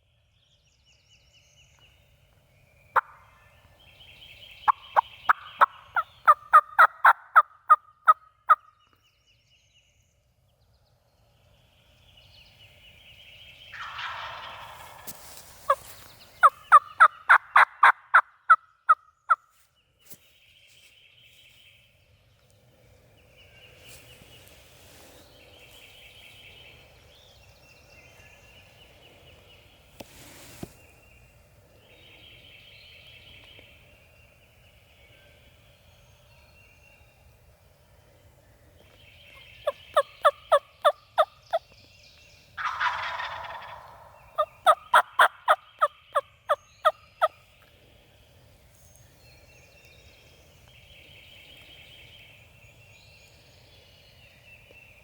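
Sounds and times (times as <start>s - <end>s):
turkey calling: 4.6s - 8.6s, 13.8s - 18.6s, 42.6s - 47.3s.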